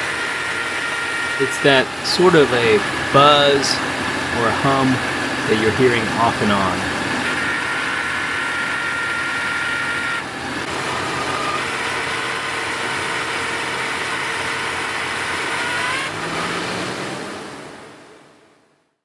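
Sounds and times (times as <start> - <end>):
high whine: 0.0 - 12.8
pulley buzzing hum: 0.0 - 16.5
diesel engine running: 0.0 - 18.6.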